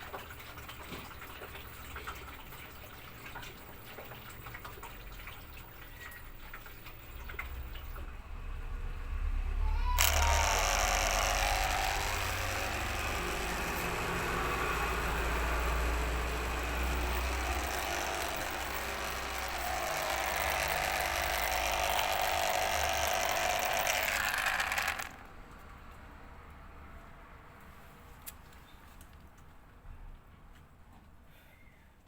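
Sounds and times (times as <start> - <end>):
drain pump rattling: 9.9 - 25.2.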